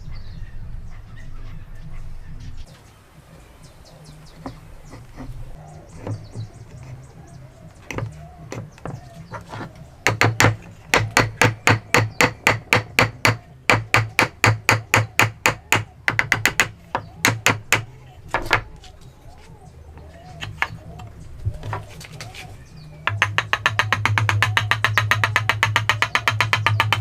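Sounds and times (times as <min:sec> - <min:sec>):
hammer striking wood: 0:07.9 - 0:18.7, 0:23.0 - 0:27.0.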